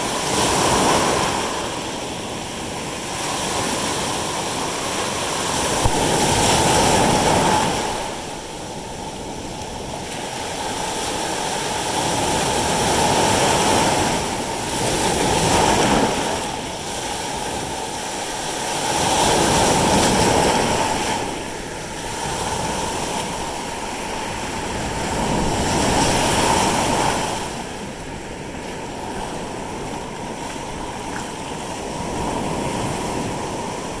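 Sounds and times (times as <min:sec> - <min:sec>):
ocean waves rushing: 0:00.0 - 0:34.0.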